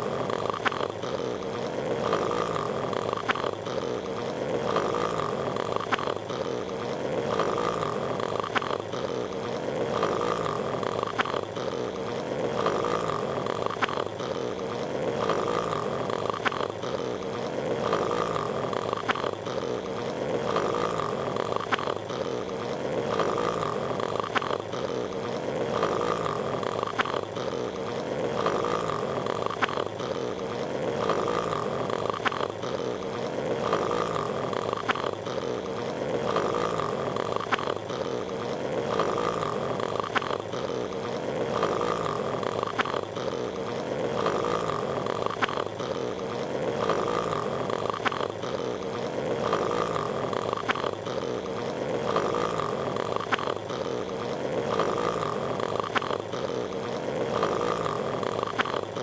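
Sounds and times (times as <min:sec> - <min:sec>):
cartoon snoring: 0:00.0 - 0:59.0
faint clicks: 0:00.3 - 0:01.1, 0:02.9 - 0:03.7, 0:05.6 - 0:06.5, 0:08.2 - 0:09.0, 0:10.0 - 0:11.6, 0:12.5 - 0:14.2, 0:14.8 - 0:18.0, 0:18.7 - 0:19.5, 0:21.2 - 0:23.4, 0:24.0 - 0:24.8, 0:25.7 - 0:27.4, 0:28.3 - 0:30.1, 0:31.0 - 0:35.3, 0:36.2 - 0:43.2, 0:44.1 - 0:48.5, 0:49.3 - 0:51.0, 0:51.6 - 0:59.0.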